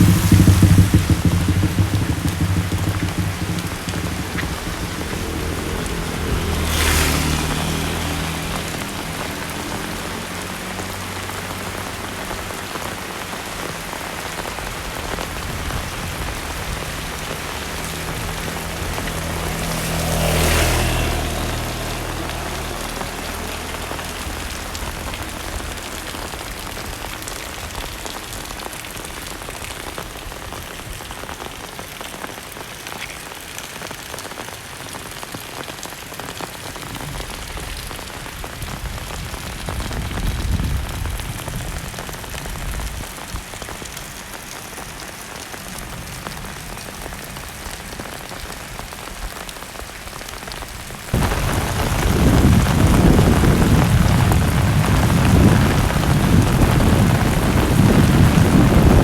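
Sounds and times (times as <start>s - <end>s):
engine passing: 0.0s - 28.8s
heavy rain pattering: 0.0s - 59.0s.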